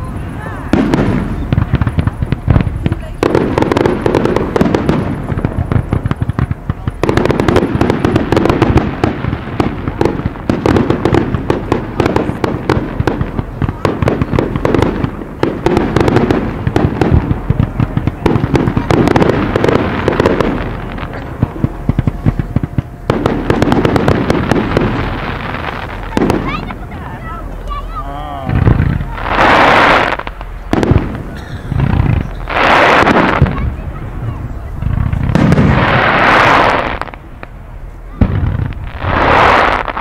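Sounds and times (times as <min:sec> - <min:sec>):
fireworks bangs and crackles: 0:00.0 - 0:40.0.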